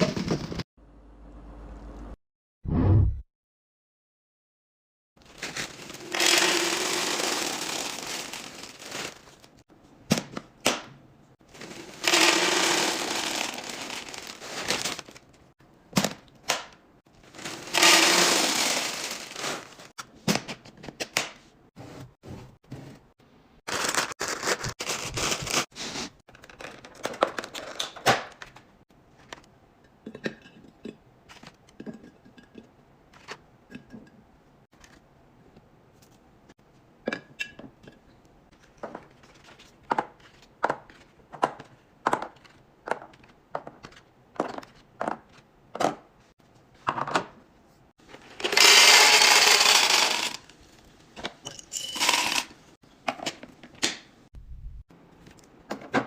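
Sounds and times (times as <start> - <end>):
packaging rustling: 5.2 - 9.5, 11.5 - 15.4.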